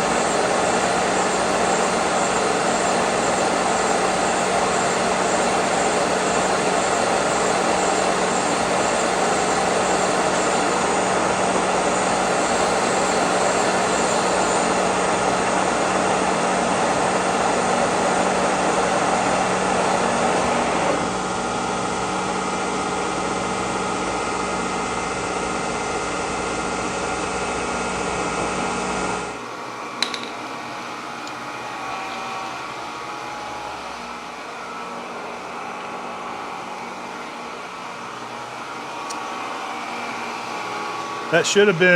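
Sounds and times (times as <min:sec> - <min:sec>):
milling machine running: 0:00.0 - 0:21.1.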